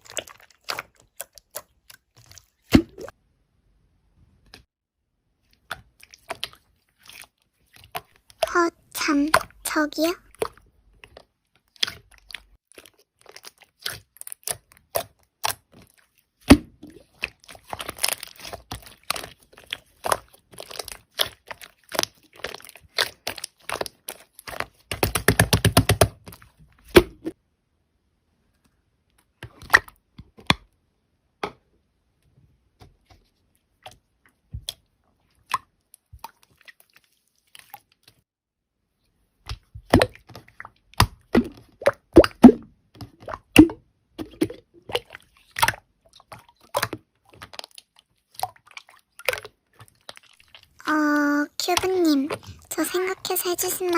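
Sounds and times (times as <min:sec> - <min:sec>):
slime squished by hand: 0:00.0 - 0:03.1, 0:05.4 - 0:09.6, 0:10.3 - 0:27.4, 0:39.4 - 0:53.9.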